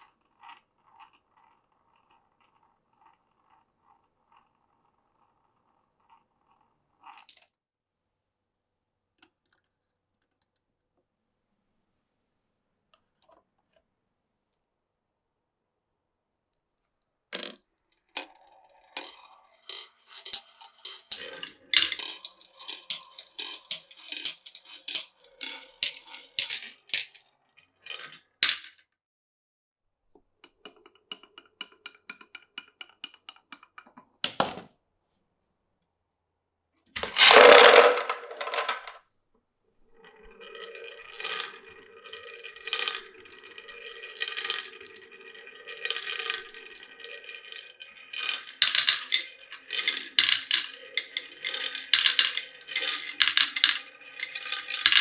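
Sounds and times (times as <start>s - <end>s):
marble ticking over ridged track: 18.2s - 27.2s, 40.3s - 55.0s
marbles clattering down wooden run: 18.2s - 27.2s, 27.9s - 28.7s, 37.0s - 39.0s, 40.4s - 55.0s.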